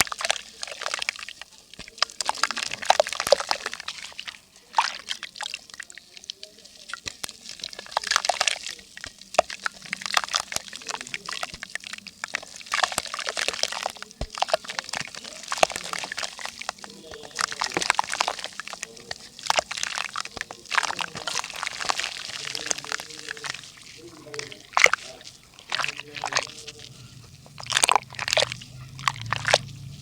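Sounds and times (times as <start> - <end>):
dry mud crackling: 0.0 - 30.0.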